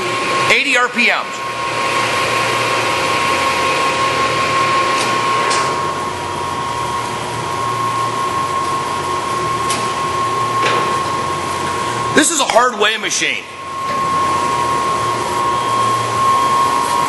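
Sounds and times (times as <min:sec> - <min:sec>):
lathe motor whirring: 0:00.0 - 0:17.0
high steady tone: 0:12.3 - 0:17.0.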